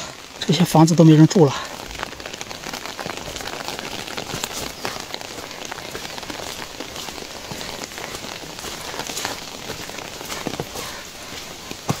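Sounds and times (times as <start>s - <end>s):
rain patter: 0.0s - 12.0s.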